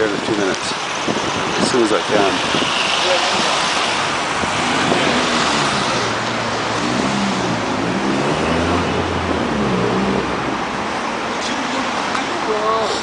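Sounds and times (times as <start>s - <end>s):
road traffic: 0.0s - 13.0s
vehicle engine humming: 0.0s - 13.0s
wind on microphone: 1.0s - 10.6s.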